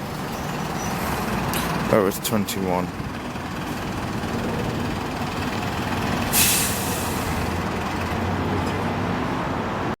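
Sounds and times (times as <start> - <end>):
bus engine running: 0.0 - 10.0
compressed air hiss: 6.3 - 7.3.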